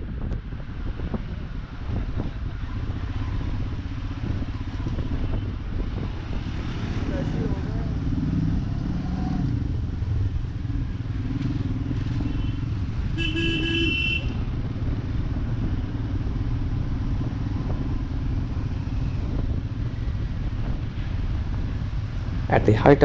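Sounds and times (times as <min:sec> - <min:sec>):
motorcycle engine running: 0:00.0 - 0:23.0
vehicle horn honking: 0:12.2 - 0:14.4.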